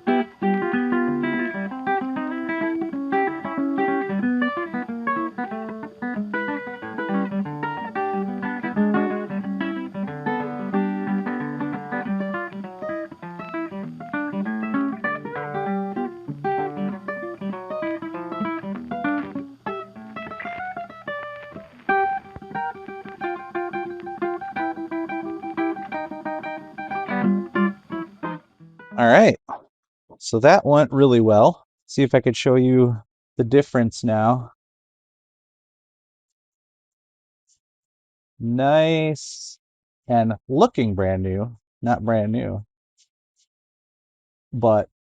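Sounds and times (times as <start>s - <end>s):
plucked guitar tune: 0.0s - 29.6s.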